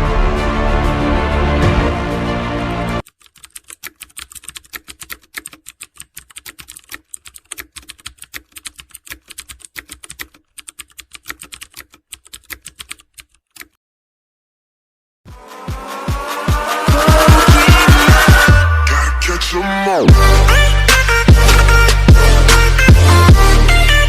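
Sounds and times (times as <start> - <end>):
music: 0.0 - 3.0, 15.3 - 24.0
computer keyboard typing: 3.0 - 13.8.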